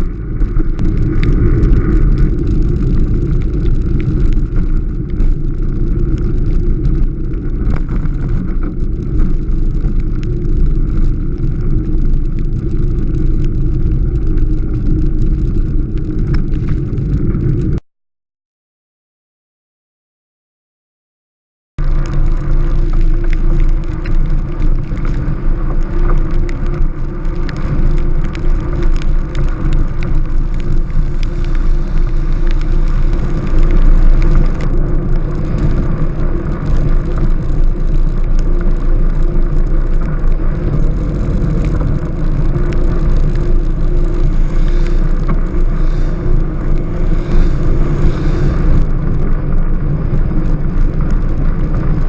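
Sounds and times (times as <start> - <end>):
tyres rumbling on wet road: 0.0 - 17.8, 21.8 - 52.0
small sharp ticks: 21.8 - 49.4.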